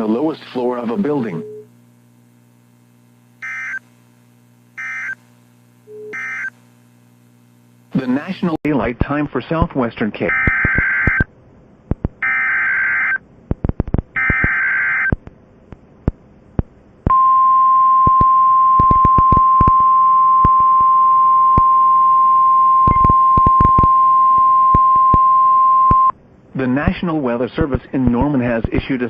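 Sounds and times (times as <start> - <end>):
static clicks crackling: 0.0 - 17.2, 18.0 - 21.8, 22.8 - 26.2, 27.6 - 28.9
steady warning alarm tone: 3.4 - 3.8, 4.8 - 5.2, 5.9 - 6.5, 10.3 - 11.3, 12.2 - 13.2, 14.2 - 15.1
raspy data bursts: 3.4 - 3.9, 4.8 - 5.3, 5.9 - 6.6, 10.3 - 11.3, 14.1 - 15.2.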